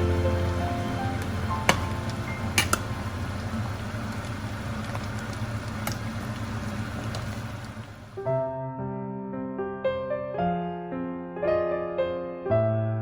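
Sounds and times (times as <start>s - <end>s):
soup bubbling in a pot: 0.0s - 8.2s.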